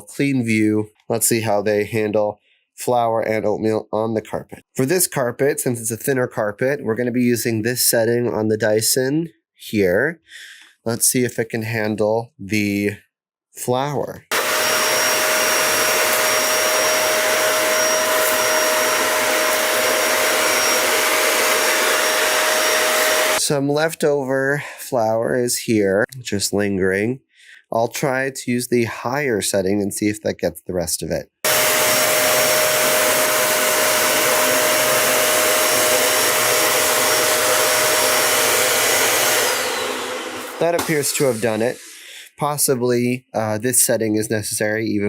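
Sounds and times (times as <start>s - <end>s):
vacuum cleaner running: 14.3s - 23.4s, 31.4s - 42.1s.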